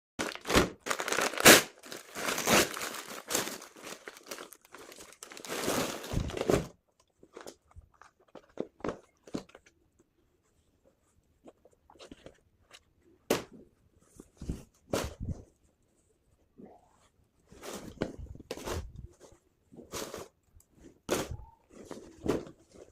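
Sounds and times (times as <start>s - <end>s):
packaging tearing and crinkling: 0.2s - 6.6s
rustling and handling noises: 0.2s - 22.9s.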